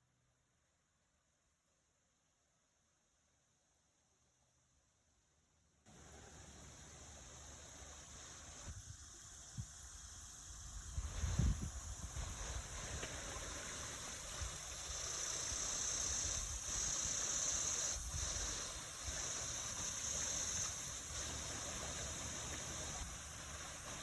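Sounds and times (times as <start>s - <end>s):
running water rushing: 5.9s - 24.0s.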